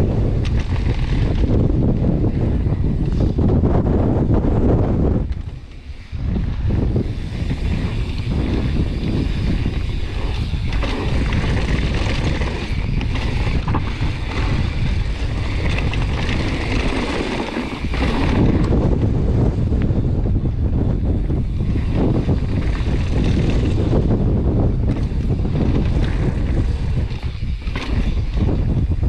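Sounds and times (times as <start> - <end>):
strong wind buffeting microphone: 0.0 - 29.0.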